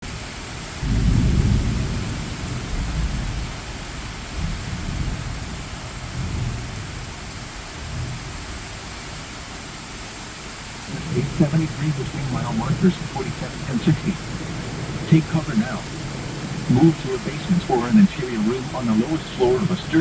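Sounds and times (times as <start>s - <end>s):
steady rain: 0.0s - 20.0s
rolling thunder: 0.8s - 7.1s, 13.4s - 15.1s.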